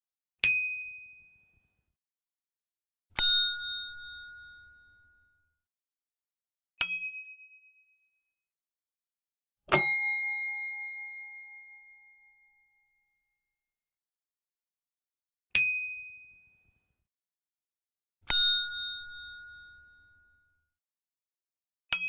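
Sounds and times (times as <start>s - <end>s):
notification dings: 9.7s - 11.6s.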